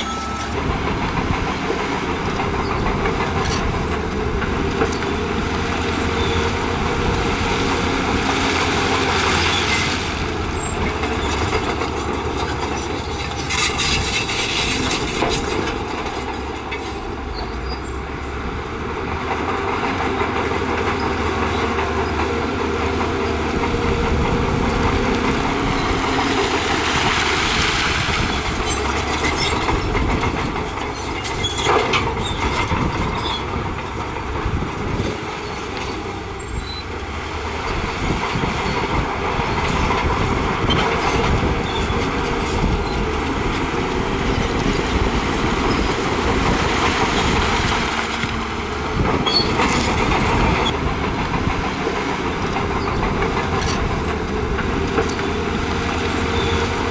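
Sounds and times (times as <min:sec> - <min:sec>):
diesel engine under load: 0:00.0 - 0:56.9
steel tracks clattering: 0:00.0 - 0:56.9.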